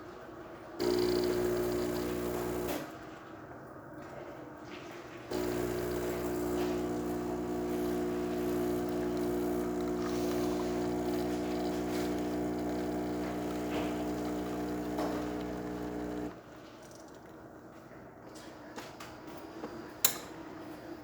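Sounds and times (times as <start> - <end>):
espresso machine pump buzzing: 0.8 - 2.9, 5.3 - 16.4.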